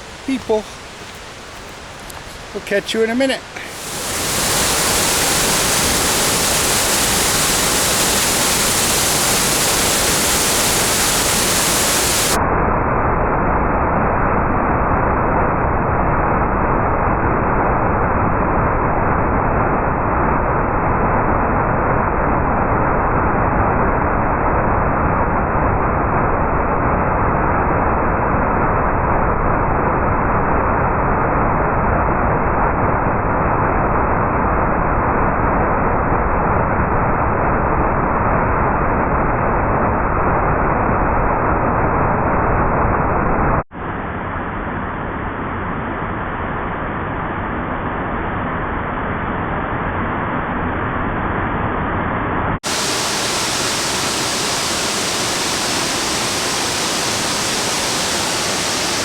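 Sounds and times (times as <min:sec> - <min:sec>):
water rushing in a brook: 0:00.0 - 0:12.4, 0:52.6 - 0:59.0.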